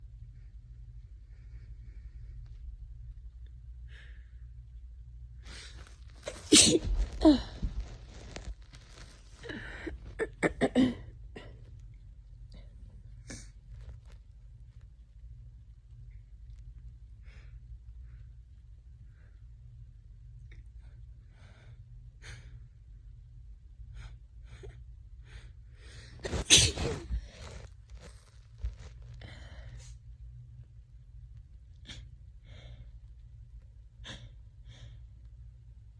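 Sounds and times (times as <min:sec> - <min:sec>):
person sneezing: 0:06.2 - 0:07.7, 0:26.2 - 0:27.6.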